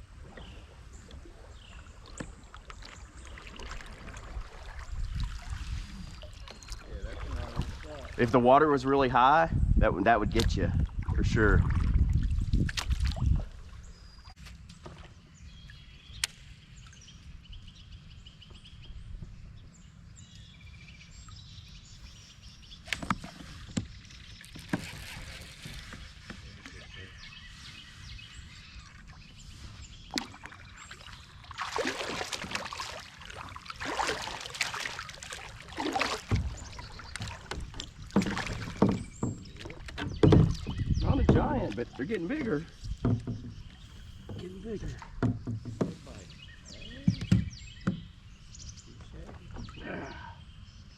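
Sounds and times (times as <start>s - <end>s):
water washing around kayak: 0.0s - 9.1s, 22.9s - 47.8s
water splashing: 0.2s - 8.8s, 10.4s - 15.2s, 22.9s - 27.1s, 28.6s - 47.4s
sharp knocks on hull: 35.8s - 41.8s, 42.4s - 46.3s, 46.9s - 48.2s.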